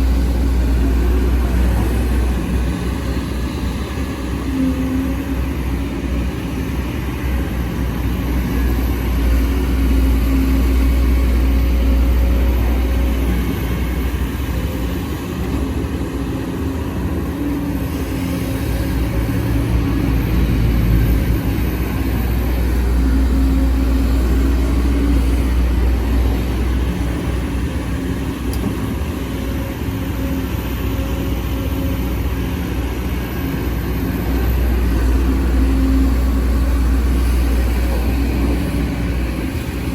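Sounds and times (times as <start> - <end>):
excavator diesel engine under load: 0.0 - 39.9.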